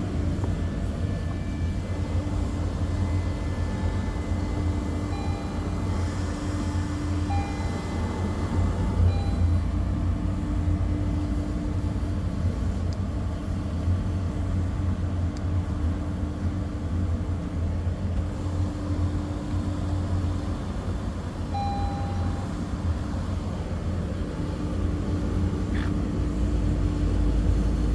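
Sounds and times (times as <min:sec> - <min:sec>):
short electronic beep: 0:05.1 - 0:05.7, 0:07.3 - 0:07.9, 0:09.1 - 0:09.6, 0:21.5 - 0:22.5.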